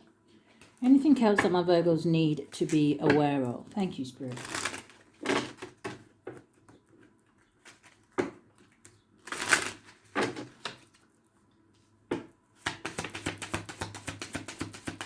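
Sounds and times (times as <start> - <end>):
cards being shuffled: 4.3 - 5.8, 12.6 - 15.0.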